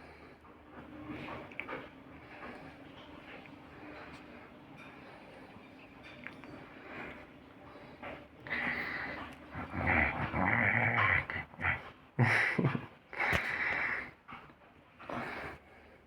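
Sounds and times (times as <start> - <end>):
cat growling and hissing: 9.5 - 11.9.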